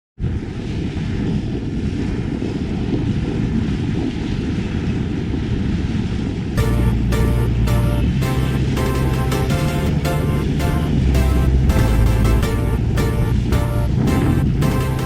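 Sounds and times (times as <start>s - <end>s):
low rushing rumble of yacht: 0.2s - 15.0s
music: 6.6s - 15.0s.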